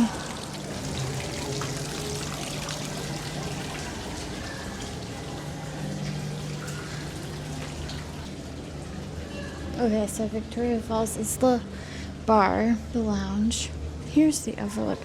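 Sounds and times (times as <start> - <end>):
flowing water pouring: 0.0 - 9.7.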